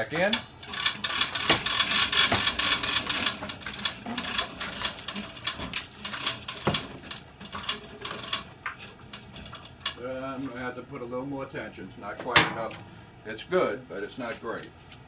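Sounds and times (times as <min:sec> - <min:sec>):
hose reel ratchet clicking: 0:00.0 - 0:10.0.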